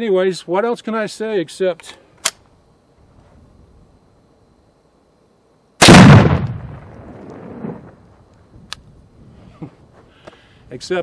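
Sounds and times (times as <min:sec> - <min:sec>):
rifle shot with echo: 0:05.8 - 0:07.9.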